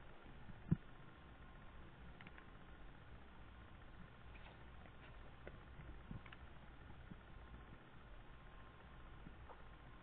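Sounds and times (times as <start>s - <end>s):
low steady hum: 0.0s - 10.0s
tape hiss: 0.0s - 10.0s.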